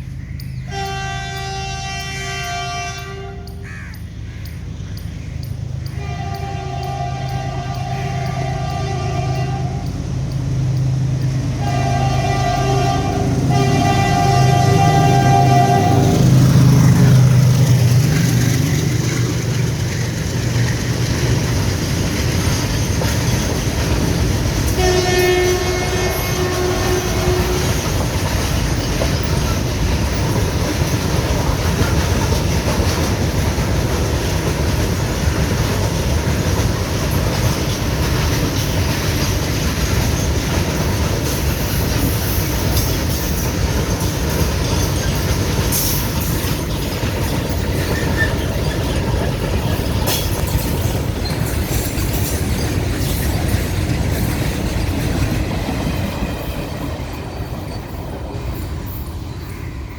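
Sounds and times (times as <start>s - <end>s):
freight train rumbling past: 0.0s - 59.9s
locomotive horn blast: 0.7s - 3.6s, 5.9s - 10.2s, 11.5s - 17.5s, 24.7s - 28.0s.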